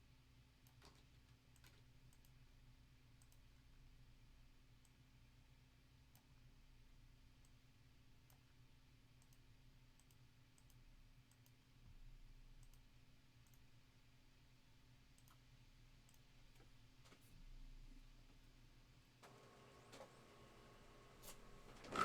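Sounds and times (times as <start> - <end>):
computer mouse clicks: 0.6 - 2.4, 3.2 - 3.5, 8.2 - 11.6, 12.6 - 13.8, 15.2 - 15.4
keyboard clicks: 0.6 - 2.4.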